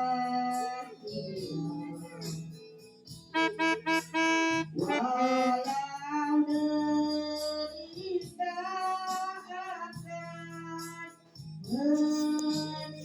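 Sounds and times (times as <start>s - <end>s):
person singing slow song: 3.4s - 7.3s.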